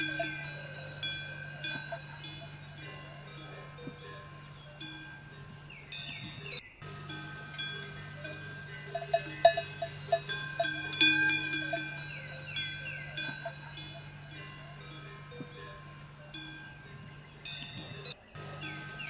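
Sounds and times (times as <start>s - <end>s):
metal bells clanking: 0.0s - 19.0s
steady low hum: 0.0s - 19.0s.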